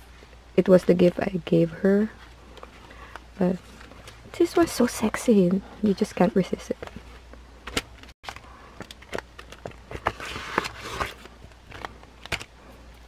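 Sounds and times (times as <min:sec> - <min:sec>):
packaging clicks: 0:07.7 - 0:12.5
packaging rustling: 0:07.7 - 0:12.5.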